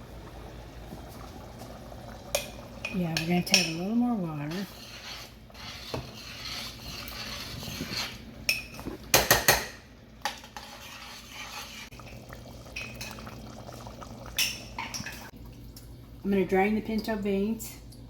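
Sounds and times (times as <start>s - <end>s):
water pouring into container: 11.9s - 15.8s
spoon clinking and stirring: 12.7s - 13.4s.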